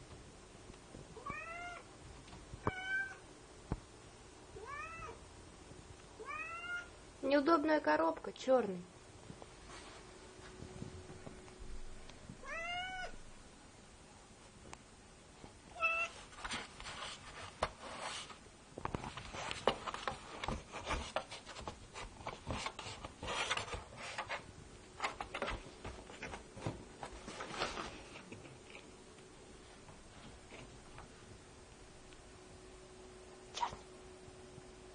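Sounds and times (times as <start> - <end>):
cat meowing: 1.2 - 1.9, 2.7 - 3.2, 4.6 - 5.2, 6.2 - 6.9, 12.4 - 13.2, 15.8 - 16.1.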